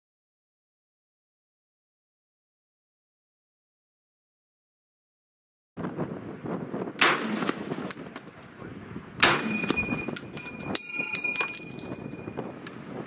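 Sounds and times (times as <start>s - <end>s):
high ringing metallic clinks: 7.9s - 8.6s, 9.4s - 12.4s.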